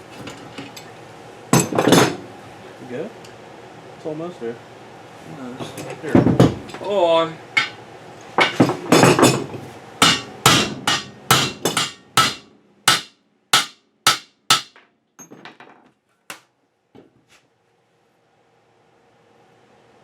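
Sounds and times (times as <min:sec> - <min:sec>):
hammer striking metal: 0:07.6 - 0:07.8, 0:10.0 - 0:14.8.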